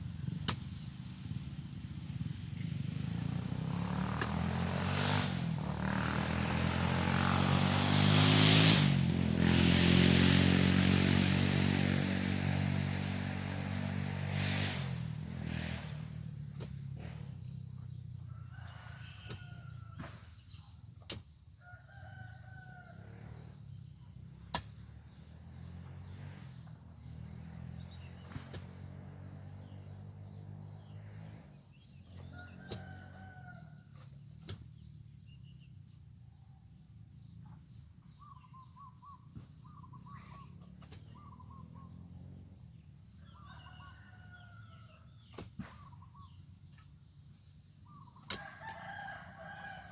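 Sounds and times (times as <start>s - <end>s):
roosters crowing: 2.8s - 16.4s, 17.0s - 20.4s, 21.6s - 23.6s, 25.0s - 34.9s, 39.3s - 49.9s.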